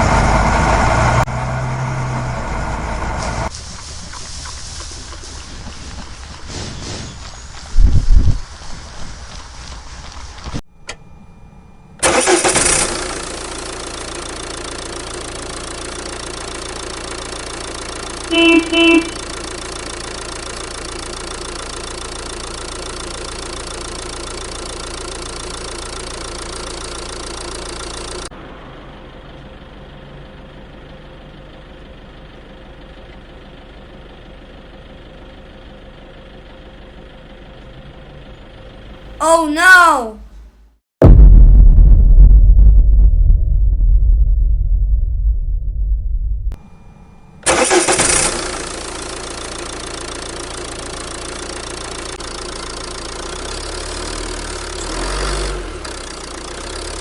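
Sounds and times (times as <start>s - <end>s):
engine cranking and starting: 12.0s - 14.2s, 47.4s - 49.0s
car horn honks: 18.3s - 19.2s.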